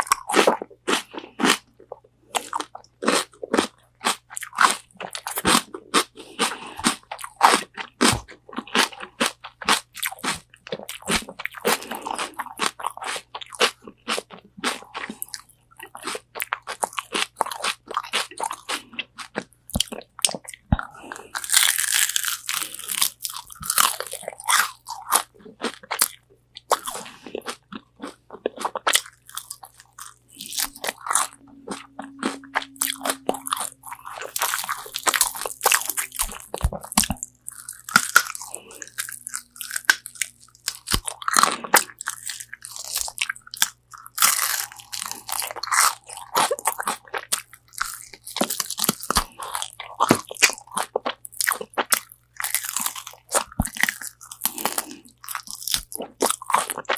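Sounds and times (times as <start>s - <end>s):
crunchy bites and chewing: 0.0s - 56.9s.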